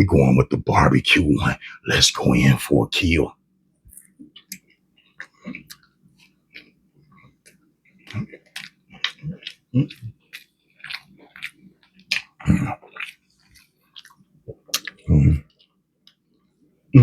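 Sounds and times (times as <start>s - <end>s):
wet chewing and biting: 3.9s - 16.2s
smacking and squishing: 4.2s - 15.0s.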